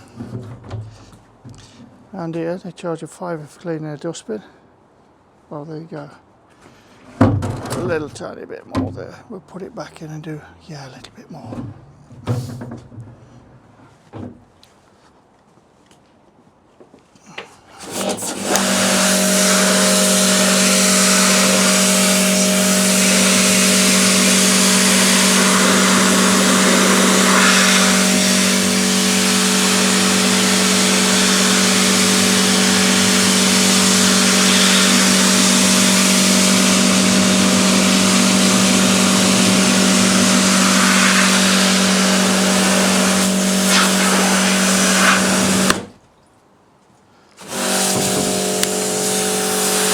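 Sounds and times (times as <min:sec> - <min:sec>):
water spray hissing: 0:17.8 - 0:45.8, 0:47.4 - 0:49.9
pressure washer humming: 0:17.8 - 0:45.9, 0:47.4 - 0:49.9.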